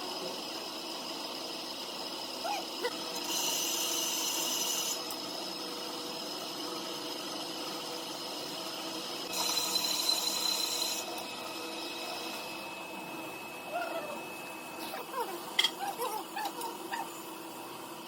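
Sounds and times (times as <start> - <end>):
background hum: 13.6 - 17.3.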